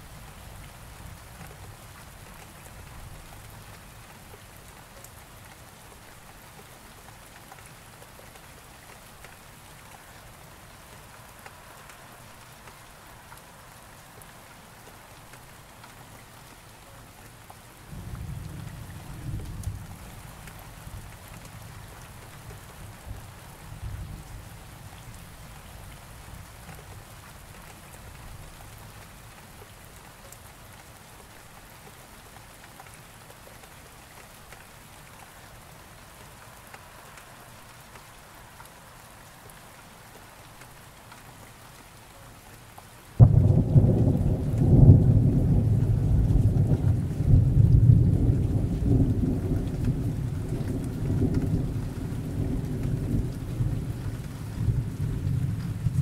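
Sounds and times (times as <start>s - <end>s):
steady rain: 0.0s - 56.0s
thunder clap and rumble: 43.2s - 56.0s.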